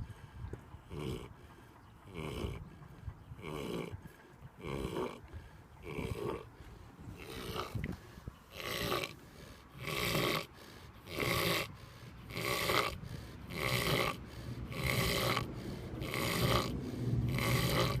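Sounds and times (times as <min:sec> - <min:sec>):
pig snoring: 0:00.9 - 0:01.3, 0:02.1 - 0:02.6, 0:03.4 - 0:05.2, 0:05.8 - 0:06.5, 0:07.2 - 0:07.9, 0:08.5 - 0:18.0.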